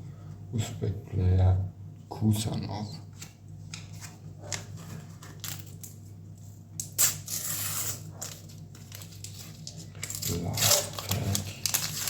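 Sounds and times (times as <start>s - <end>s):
paper wrapper crackling: 7.0s - 12.0s
paper wrapper rustling: 7.0s - 12.0s.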